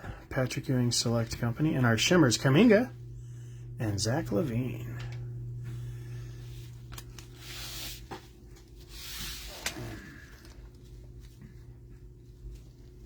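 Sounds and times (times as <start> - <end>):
steady low hum: 0.0 - 13.0
card sleeves sliding and rustling: 6.5 - 9.8.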